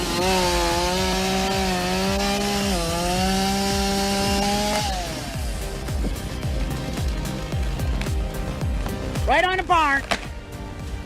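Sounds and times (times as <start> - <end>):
chainsaw cutting through a tree trunk: 0.0 - 7.4.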